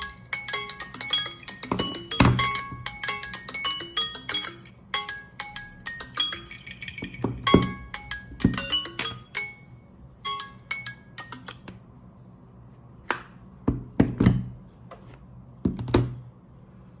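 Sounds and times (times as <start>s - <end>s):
phone alarm chime melody: 0.0s - 11.6s.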